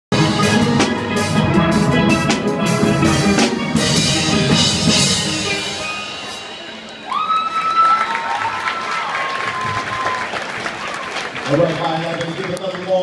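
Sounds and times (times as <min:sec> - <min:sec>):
steel pan band playing: 0:00.1 - 0:08.4
drums: 0:00.1 - 0:10.9.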